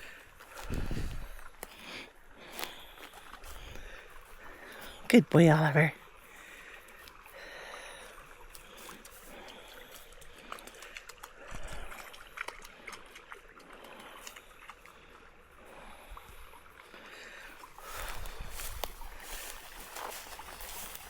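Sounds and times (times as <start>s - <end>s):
stream trickling: 0.0s - 21.0s
dogs splashing in water: 7.7s - 21.0s.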